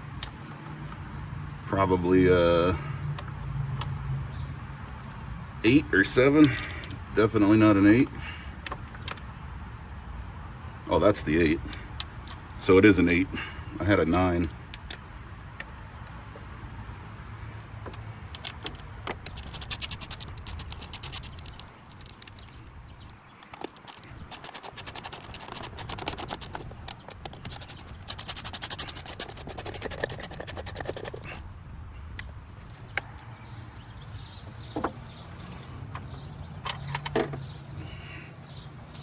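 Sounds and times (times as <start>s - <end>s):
hand ratchet clicking: 18.4s - 31.4s
metal tools scraping and clinking: 23.4s - 31.4s.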